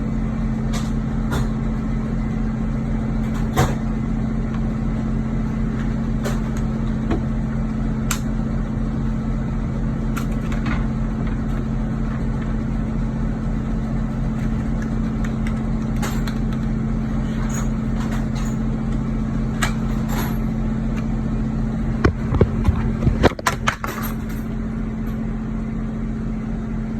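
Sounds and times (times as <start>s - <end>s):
idling vehicle engine hum: 0.0s - 26.9s.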